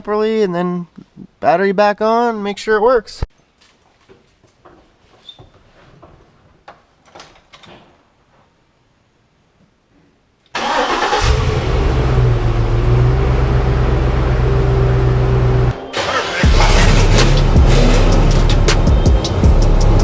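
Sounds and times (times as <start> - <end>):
car engine starting and running: 10.6 - 20.0.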